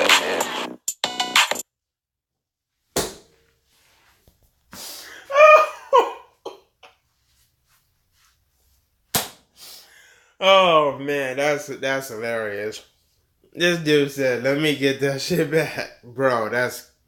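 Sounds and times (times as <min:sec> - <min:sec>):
man laughing: 0:05.1 - 0:07.0.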